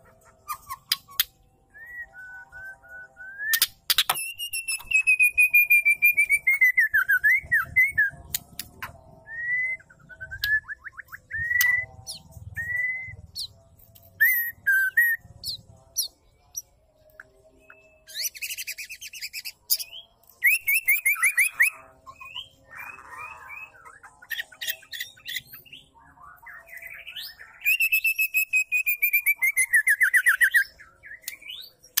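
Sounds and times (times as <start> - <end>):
bird harsh chattering: 0.1 - 1.3
bird whistled phrases: 9.2 - 11.9, 14.2 - 15.2.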